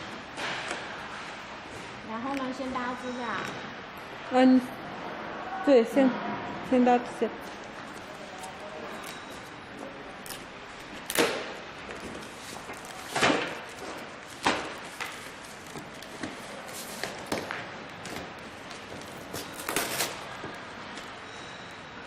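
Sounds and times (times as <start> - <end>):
frame parts and packaging knocking: 11.0 - 18.3.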